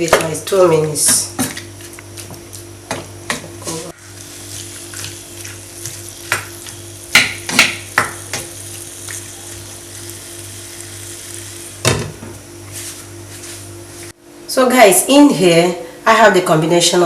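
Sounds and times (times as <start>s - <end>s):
meat sizzling in a pot: 3.9s - 12.2s.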